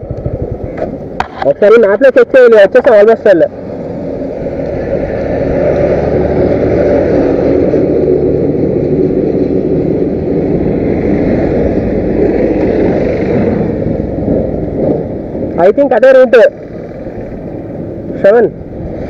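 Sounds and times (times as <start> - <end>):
motorcycle engine running: 0.0 - 1.4
wind and road noise: 0.0 - 19.0.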